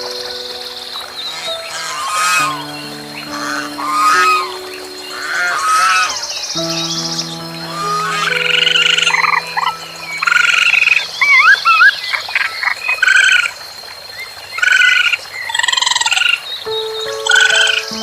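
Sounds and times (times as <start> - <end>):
croaking animal calls: 1.3 - 13.6.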